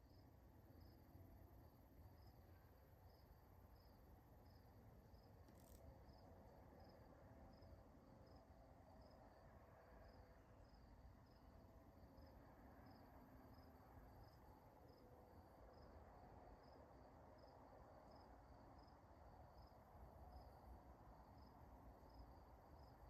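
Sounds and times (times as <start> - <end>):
cricket chirping: 0.0 - 23.0.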